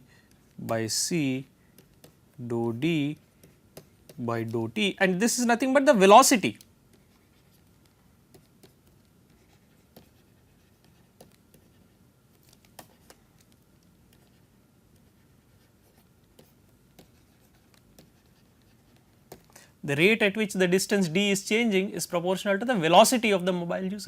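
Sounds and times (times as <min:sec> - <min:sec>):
pen writing on paper: 0:06.9 - 0:12.0, 0:14.1 - 0:19.5.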